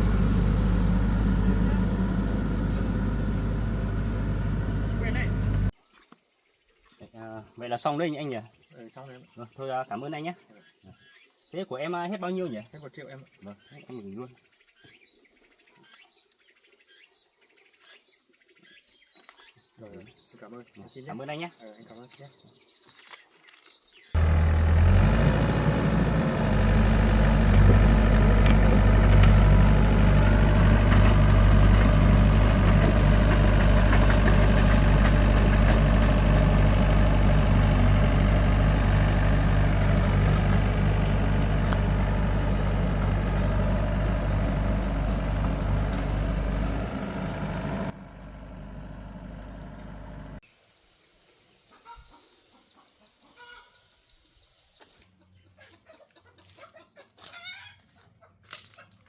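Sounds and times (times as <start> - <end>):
diesel engine running: 0.0 - 5.7, 24.2 - 50.4.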